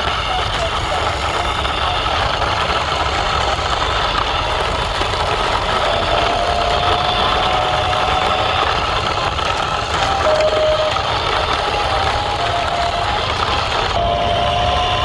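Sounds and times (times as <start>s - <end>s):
faint whine: 0.0s - 15.0s
small motor running: 0.0s - 15.0s.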